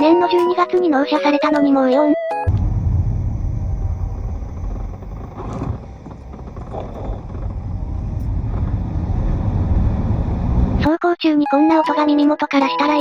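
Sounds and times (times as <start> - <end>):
car interior road rumble: 2.5 - 10.9.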